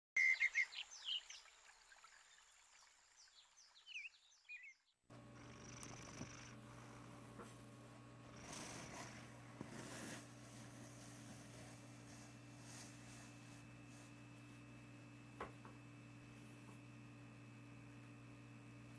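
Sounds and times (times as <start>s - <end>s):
steady low hum: 5.1s - 18.9s
cat snoring softly: 5.2s - 14.2s.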